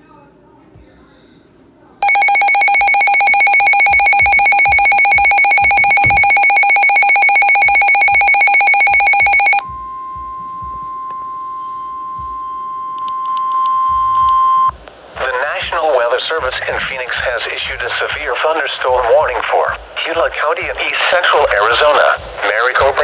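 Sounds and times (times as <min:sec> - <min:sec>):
two-tone warbling alert signal: 0:02.0 - 0:13.0
steady single-pitch tone: 0:02.0 - 0:14.7.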